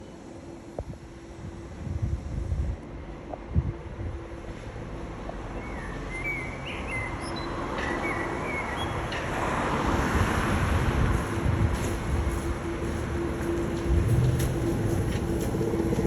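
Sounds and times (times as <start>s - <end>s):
city traffic noise: 0.0s - 16.0s
nightingale singing: 5.6s - 9.0s
vehicle passing: 9.5s - 16.0s.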